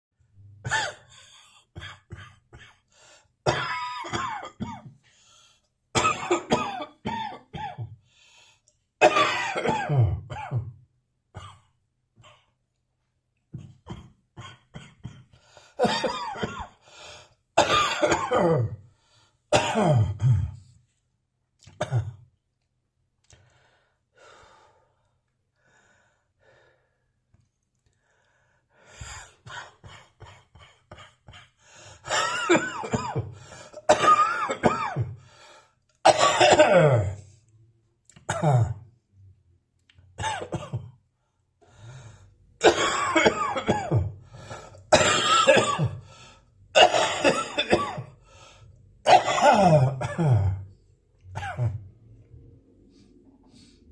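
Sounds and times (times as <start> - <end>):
person coughing dryly: 0.6 - 2.8, 3.5 - 5.0, 6.0 - 7.9, 9.0 - 10.8, 13.6 - 16.8, 17.6 - 18.8, 19.5 - 20.6, 21.7 - 22.2, 29.0 - 35.2, 36.1 - 37.2, 38.3 - 38.8, 40.2 - 40.9, 42.6 - 46.1, 46.8 - 48.2, 49.0 - 50.7, 51.4 - 51.8.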